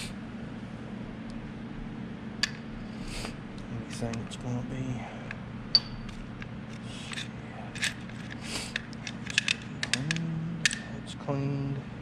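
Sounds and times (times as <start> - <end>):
metal parts clinking: 5.8 - 10.9
small clicks and knocks: 6.1 - 10.8.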